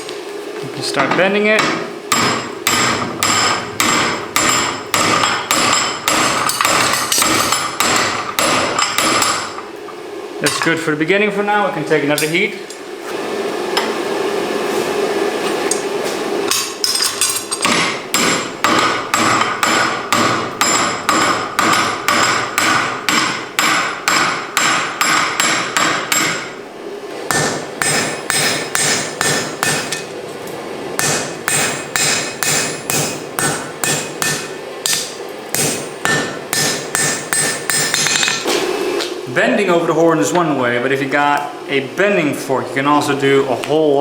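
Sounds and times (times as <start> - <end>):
hammer striking steel on anvil: 1.6 - 9.6, 16.5 - 26.6, 27.3 - 30.1, 31.0 - 38.5.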